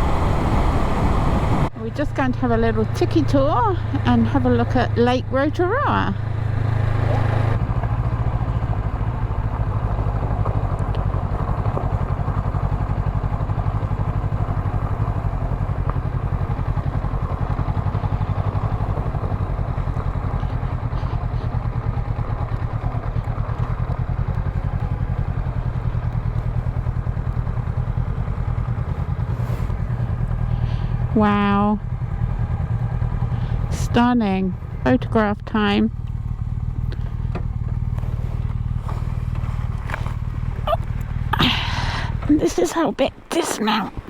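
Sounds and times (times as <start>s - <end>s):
motorcycle engine running: 0.0s - 44.0s.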